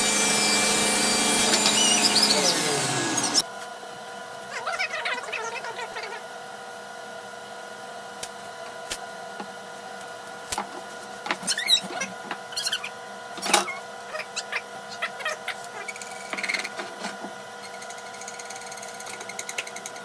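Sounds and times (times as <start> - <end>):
short squeak: 11.4 - 12.9.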